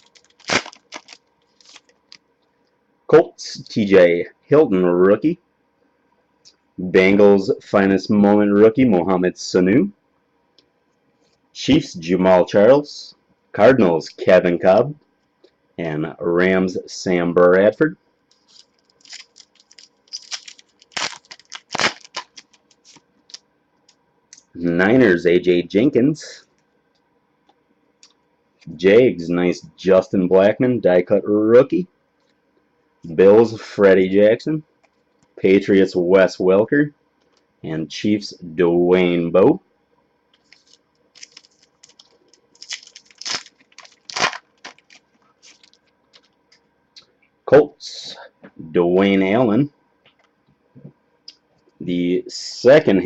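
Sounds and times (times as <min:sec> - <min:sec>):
cards and packaging handled: 0:00.0 - 0:02.2, 0:18.3 - 0:23.4, 0:40.4 - 0:46.4.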